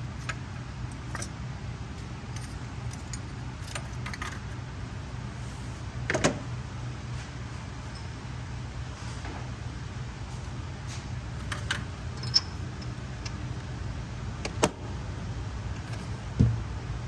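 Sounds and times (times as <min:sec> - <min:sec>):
metal hand tools clinking: 0:11.4 - 0:13.4.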